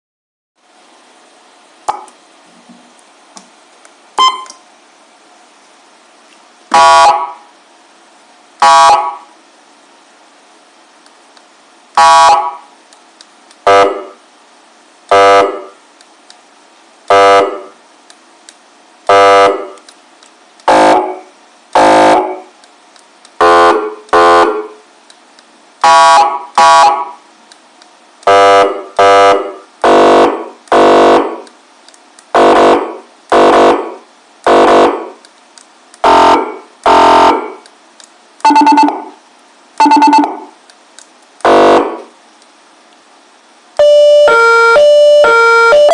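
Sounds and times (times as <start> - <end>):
electronic siren horn blasts: 6.7 - 7.5, 8.6 - 9.3, 11.9 - 12.7, 13.6 - 14.2, 15.1 - 15.8, 17.1 - 17.8, 19.1 - 19.8, 20.7 - 22.5, 23.4 - 24.8, 25.8 - 27.2, 28.2 - 31.4, 32.3 - 35.2, 36.0 - 37.6, 38.4 - 39.2, 39.8 - 40.5, 41.4 - 42.1, 43.8 - 45.9.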